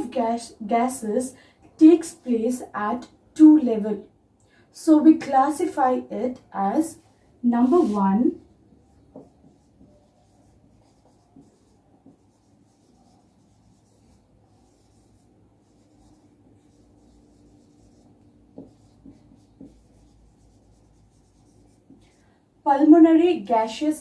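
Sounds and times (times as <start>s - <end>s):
soft taps: 9.1s - 9.9s
pen scratching while writing: 9.2s - 21.8s.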